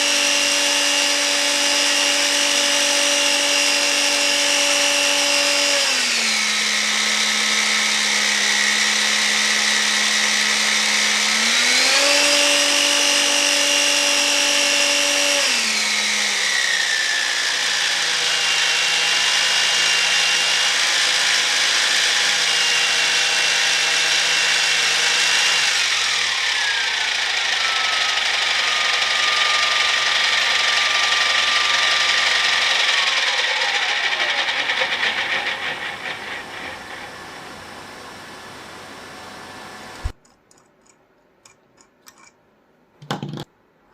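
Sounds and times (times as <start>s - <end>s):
high turbine whine: 25.8s - 40.1s.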